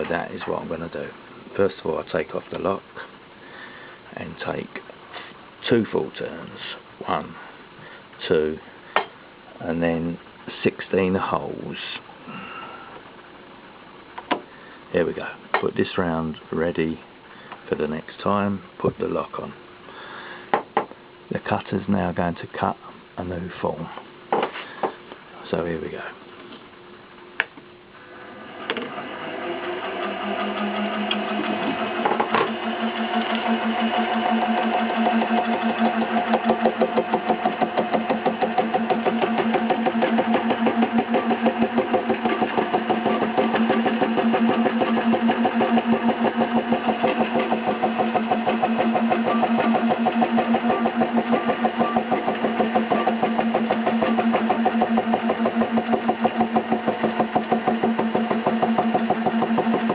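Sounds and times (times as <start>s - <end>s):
milling machine cutting: 28.3s - 59.9s.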